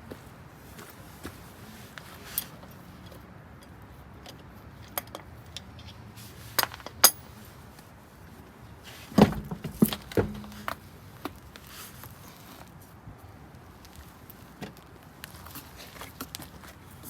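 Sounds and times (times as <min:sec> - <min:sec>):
metal clinks and knocks: 0:09.2 - 0:10.8.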